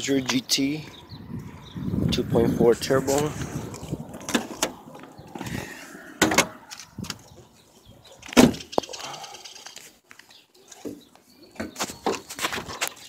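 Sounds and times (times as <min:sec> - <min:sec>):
knocks and clunks: 0:06.2 - 0:07.2.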